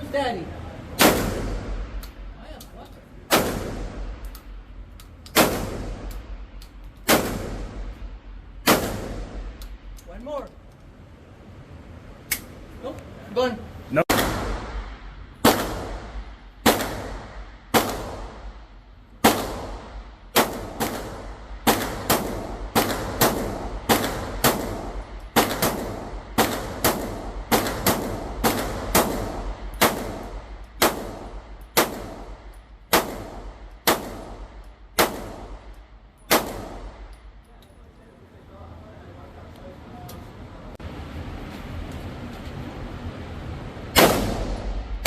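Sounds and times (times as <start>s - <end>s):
gunshots with echo: 19.2s - 34.4s.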